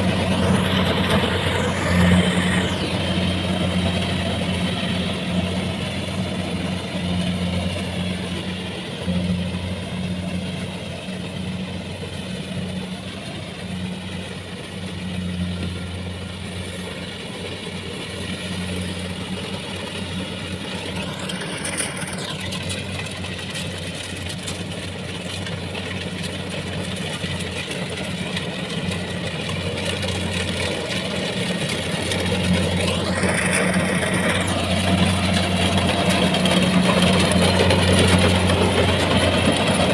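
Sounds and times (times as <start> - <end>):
diesel engine humming: 0.0 - 39.9
high-pitched noise sweeps: 0.2 - 5.0.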